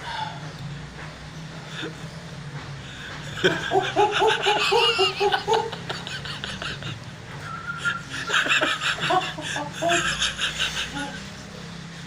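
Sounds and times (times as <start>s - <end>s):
person laughing: 3.2s - 7.1s, 7.8s - 11.3s.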